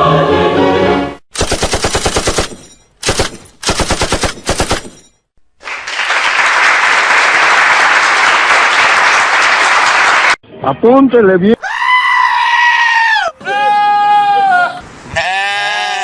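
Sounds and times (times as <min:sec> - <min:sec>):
machine-gun fire: 0:01.3 - 0:05.1.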